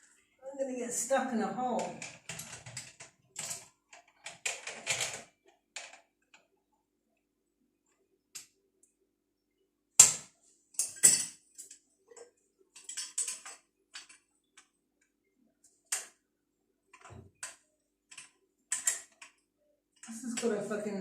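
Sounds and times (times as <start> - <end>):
pipe fittings clicking and knocking: 1.8 - 6.5, 10.0 - 14.7, 16.9 - 20.6.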